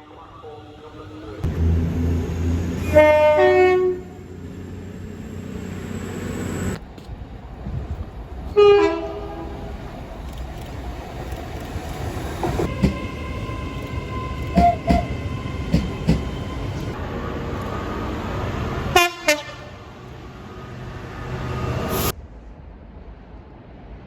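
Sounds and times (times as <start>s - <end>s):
train rumbling past: 0.0s - 24.0s
train horn blasts: 2.6s - 4.3s, 8.6s - 9.6s, 12.7s - 15.2s, 18.9s - 19.8s.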